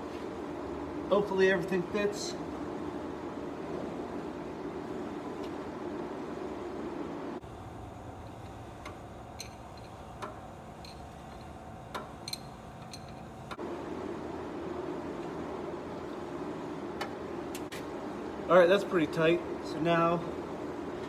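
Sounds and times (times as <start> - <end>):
steady shop hum: 0.0 - 21.0.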